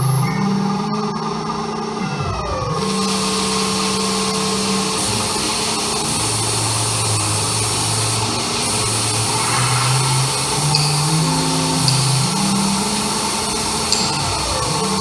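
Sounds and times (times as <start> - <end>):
held low drones: 2.8 - 15.0
dense wall of hiss: 2.9 - 15.0
tone sliding downward: 9.2 - 15.0.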